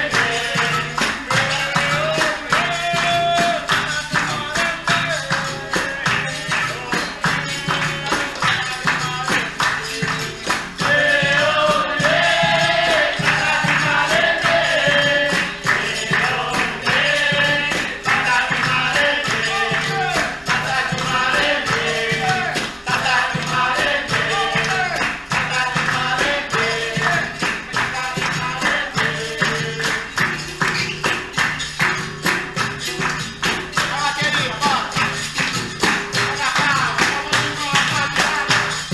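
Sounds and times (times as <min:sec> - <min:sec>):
group singing in response: 0:00.0 - 0:30.4
hand percussion beat: 0:00.0 - 0:38.9
tambourine jingle: 0:00.0 - 0:38.9.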